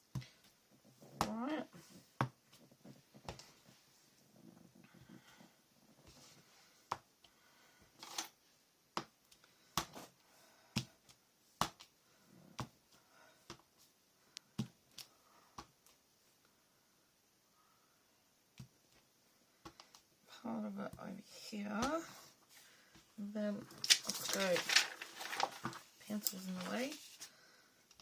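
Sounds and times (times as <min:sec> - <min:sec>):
paper rustling: 0:23.6 - 0:27.3.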